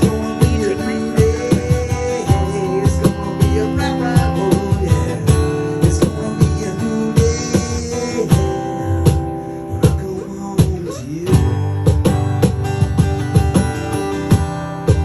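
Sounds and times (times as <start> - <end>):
steady drum beat: 0.0 - 15.0
strummed electric guitar: 0.0 - 15.0.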